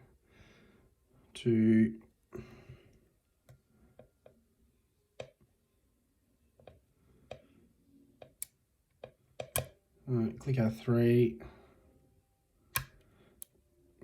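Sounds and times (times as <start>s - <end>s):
lock pick clicking: 9.4s - 9.8s, 12.7s - 13.1s.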